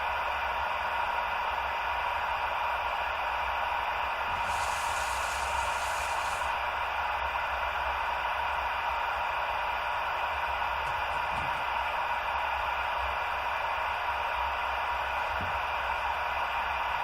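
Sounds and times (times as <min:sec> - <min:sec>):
static hiss: 0:04.3 - 0:06.6.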